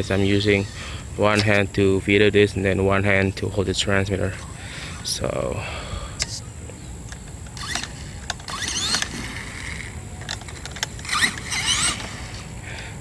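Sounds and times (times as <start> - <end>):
motor and gears whining: 0.0 - 1.9, 7.1 - 13.0.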